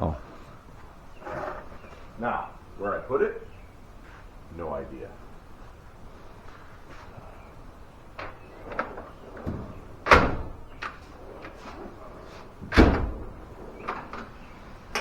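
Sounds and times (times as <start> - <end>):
light clicks and knocks: 5.8 - 15.0.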